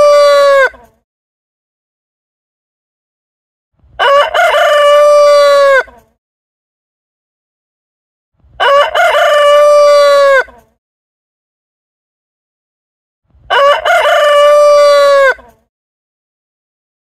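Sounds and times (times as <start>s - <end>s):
rooster crowing: 0.0s - 0.8s, 4.0s - 6.0s, 8.6s - 10.6s, 13.5s - 15.6s.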